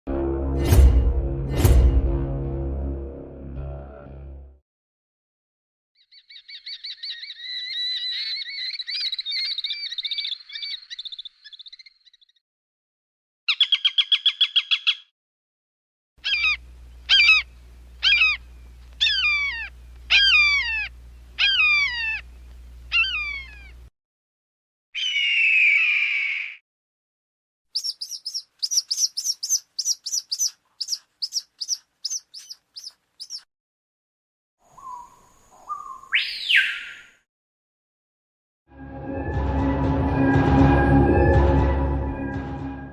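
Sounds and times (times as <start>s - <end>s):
falcon calls and screams: 6.0s - 12.3s, 16.2s - 18.4s, 19.0s - 22.3s, 22.9s - 23.8s, 25.0s - 26.6s, 27.8s - 33.4s, 34.7s - 37.2s
steady low hum: 16.2s - 23.9s.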